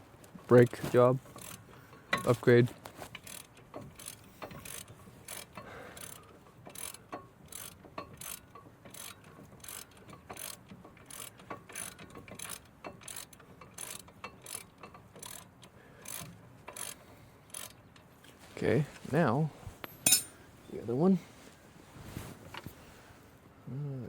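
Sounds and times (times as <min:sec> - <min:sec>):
hand ratchet clicking: 0:01.4 - 0:02.4, 0:03.2 - 0:17.8.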